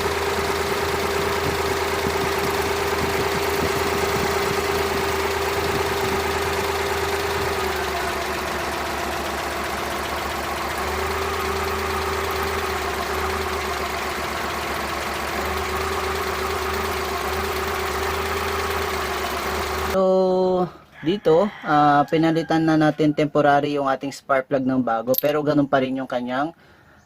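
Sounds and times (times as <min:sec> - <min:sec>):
engine idling unevenly: 0:00.0 - 0:20.0.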